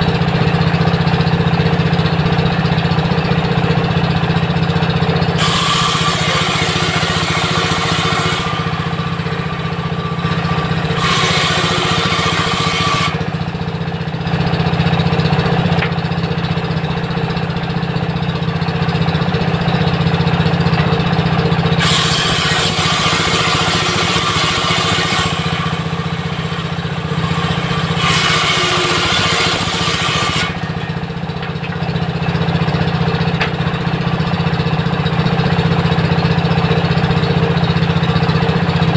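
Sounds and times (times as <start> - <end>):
diesel engine running: 0.0 - 38.9
saw blade ripping through wood: 5.4 - 13.4, 21.8 - 31.1.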